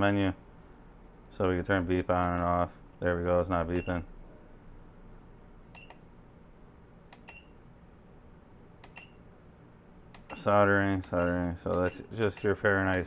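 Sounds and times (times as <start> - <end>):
push buttons clicking: 8.8 - 9.2, 10.1 - 13.0.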